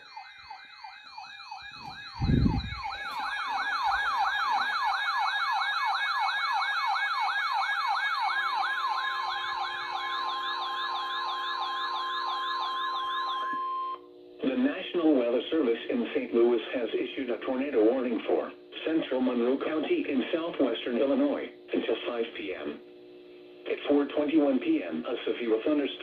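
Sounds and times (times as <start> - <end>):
electronic sirens yelping: 0.0 - 6.1
steady alarm tone: 0.0 - 14.2
low thump: 1.8 - 3.1
high warbling tones: 1.8 - 3.2.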